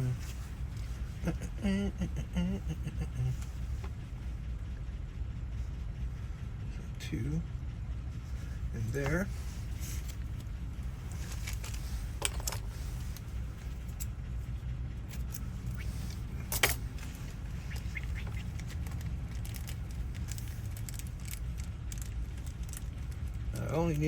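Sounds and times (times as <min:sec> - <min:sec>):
low hum: 0:00.0 - 0:24.0
metal lock parts clicking: 0:16.4 - 0:24.0.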